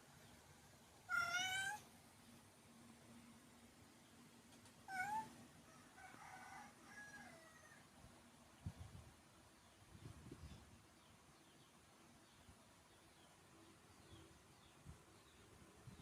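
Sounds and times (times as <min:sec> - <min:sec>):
cat meowing: 0:01.1 - 0:01.8, 0:04.9 - 0:05.3.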